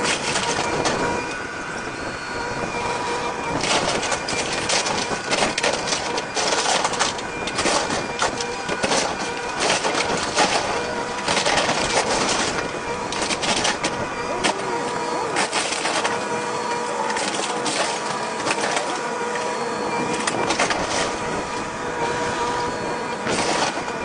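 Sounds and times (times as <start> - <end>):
wood and debris cracking: 0.0 - 1.2, 3.6 - 14.7, 15.4 - 16.2, 17.1 - 19.0, 20.1 - 21.3, 23.2 - 24.0
excavator whining: 0.0 - 24.0.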